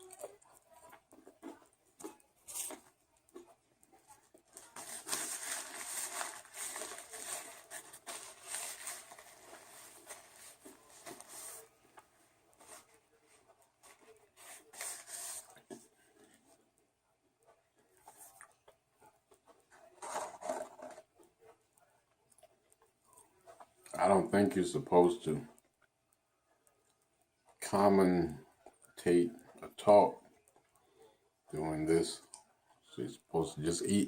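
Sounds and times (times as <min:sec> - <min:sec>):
paper packaging crinkling: 0:04.5 - 0:11.7, 0:13.8 - 0:15.7, 0:20.0 - 0:21.0.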